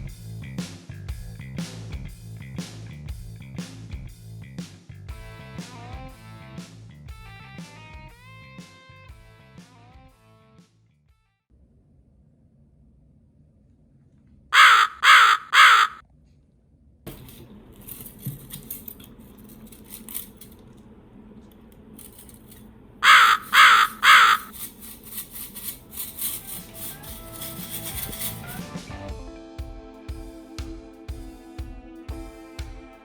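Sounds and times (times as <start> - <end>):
crow cawing: 14.6 - 16.0, 23.0 - 24.6.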